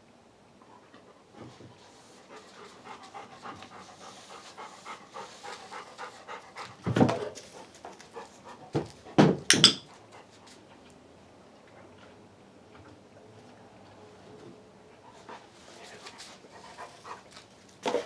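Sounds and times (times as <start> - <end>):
dog panting: 1.9 - 9.3, 15.0 - 18.0.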